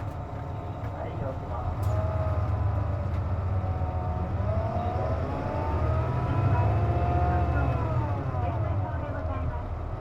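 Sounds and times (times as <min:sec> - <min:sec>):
bus diesel engine running: 0:00.0 - 0:10.0.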